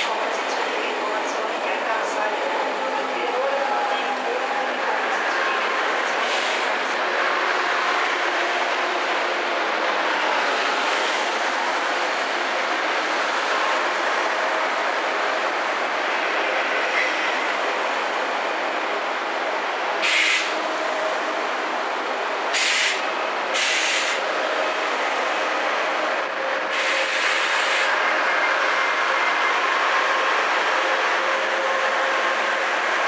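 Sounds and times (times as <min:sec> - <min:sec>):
train running noise: 0:00.0 - 0:33.0
sharp air hisses: 0:20.0 - 0:20.6, 0:22.5 - 0:23.0, 0:23.6 - 0:24.2.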